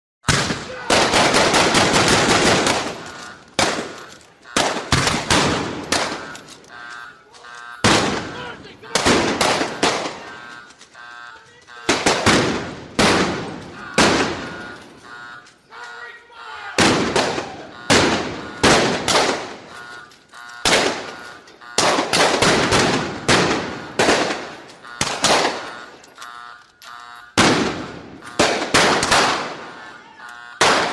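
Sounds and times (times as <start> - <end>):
echoing single gunshots: 0.2 - 6.3, 7.8 - 10.4, 11.9 - 14.7, 16.8 - 19.7, 20.6 - 21.2, 21.8 - 25.7, 27.4 - 29.7, 30.6 - 30.9
automatic gunfire: 0.2 - 6.8, 7.8 - 10.6, 11.8 - 15.0, 16.8 - 20.0, 20.6 - 26.1, 27.4 - 30.0, 30.6 - 30.9.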